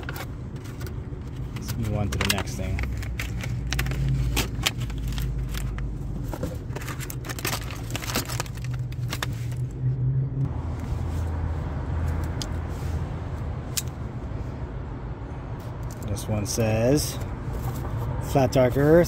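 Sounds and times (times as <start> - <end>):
packaging being opened: 0.0 - 5.9, 6.6 - 9.6.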